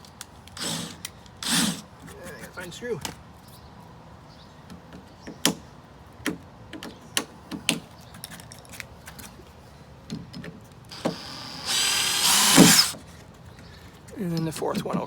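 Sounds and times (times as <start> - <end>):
drill backing out screw: 10.9 - 13.0.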